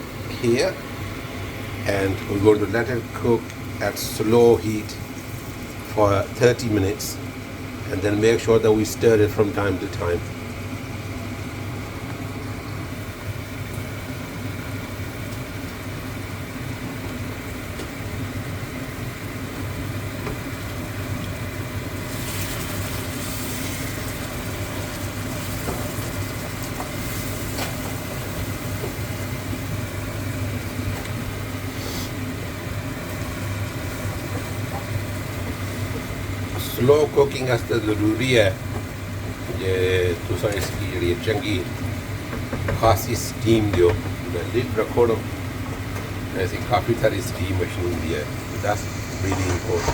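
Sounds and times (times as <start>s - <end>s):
mechanical hum: 0.0s - 49.9s
even hiss: 31.7s - 32.3s, 46.4s - 49.9s.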